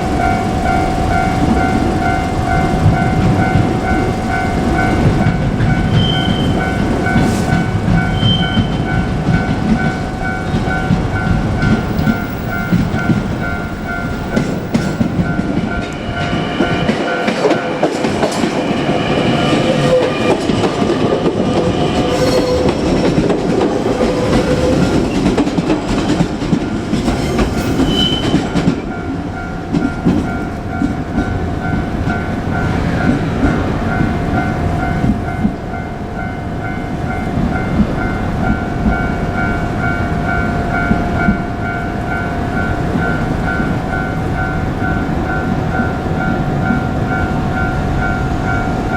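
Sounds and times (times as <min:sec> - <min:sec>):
level crossing warning bell: 0:00.0 - 0:48.9
train rumble: 0:00.0 - 0:48.9
train wheels clacking on rail joints: 0:00.2 - 0:35.7.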